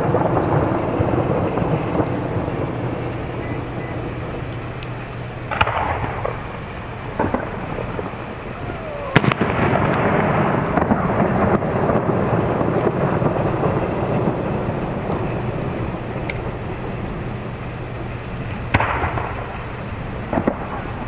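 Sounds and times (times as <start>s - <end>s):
firework loud report: 0.0s - 21.0s
fireworks dense crackle: 0.0s - 21.0s
fireworks small pops: 0.2s - 14.4s, 15.0s - 16.8s, 17.6s - 21.0s.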